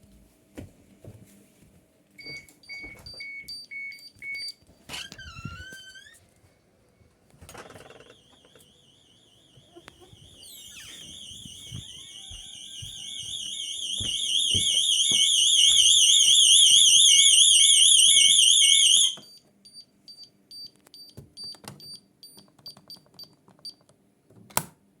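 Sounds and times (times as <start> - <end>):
alarm siren warbling: 8.0 - 19.2.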